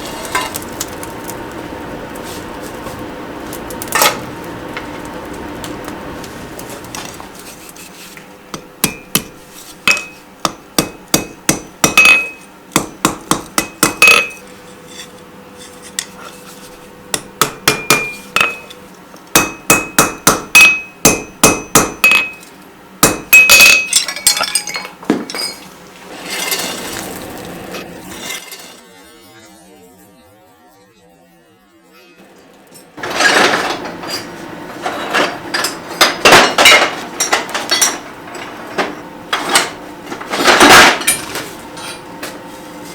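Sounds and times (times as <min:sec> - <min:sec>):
hammer ringing on hot iron: 0:08.5 - 0:14.5, 0:17.1 - 0:24.0.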